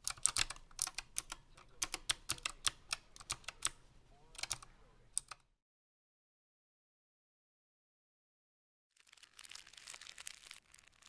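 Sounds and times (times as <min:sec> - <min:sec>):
keyboard key clicks: 0:04.4 - 0:04.6.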